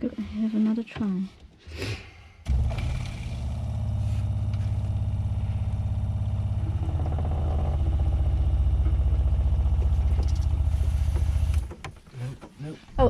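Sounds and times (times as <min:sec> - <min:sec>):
electric water pump humming: 0:02.4 - 0:11.8.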